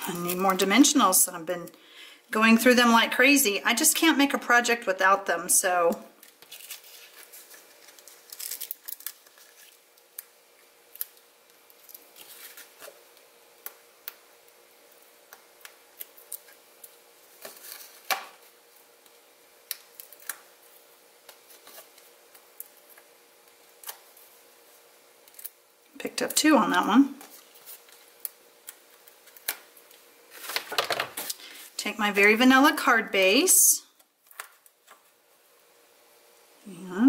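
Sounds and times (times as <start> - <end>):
cardstock crinkling and clicking: 6.2 - 13.0.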